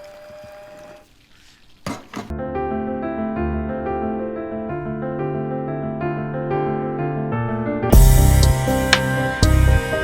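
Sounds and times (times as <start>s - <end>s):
piano-like keyboard music: 2.3s - 10.0s.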